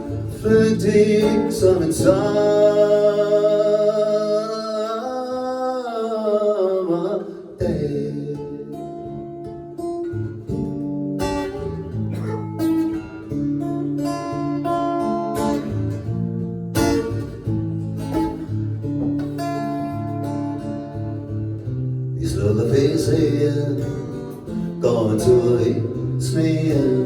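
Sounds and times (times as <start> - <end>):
acoustic guitar picking and strumming: 0.0 - 27.0.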